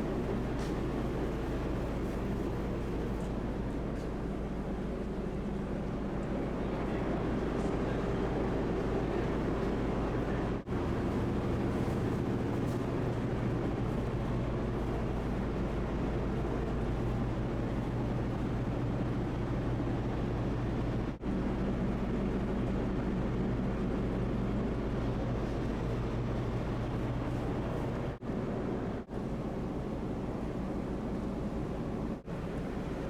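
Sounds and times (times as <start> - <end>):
boat engine humming: 25.4 - 33.0.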